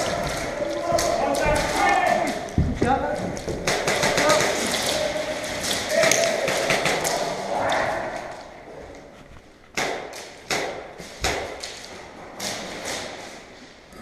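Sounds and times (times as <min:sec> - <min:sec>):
sharp knocks with echo: 0:00.0 - 0:04.9, 0:06.0 - 0:07.3, 0:09.7 - 0:11.7
voices: 0:00.0 - 0:09.3.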